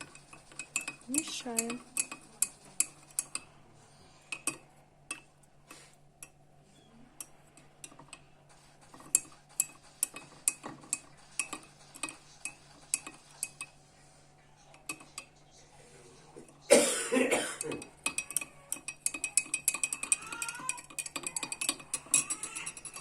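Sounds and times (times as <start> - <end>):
teaspoon clinking against glass: 0.0 - 3.5, 17.3 - 23.0.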